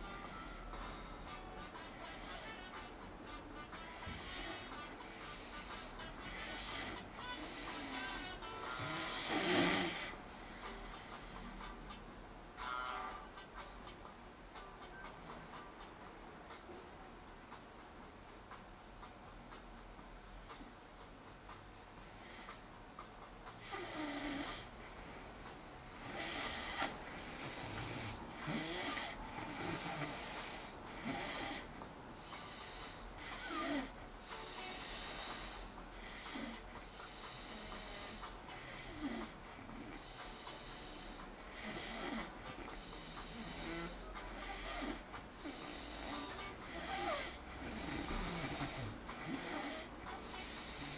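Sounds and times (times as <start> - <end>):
man snoring: 0.0 - 11.8, 23.6 - 50.9.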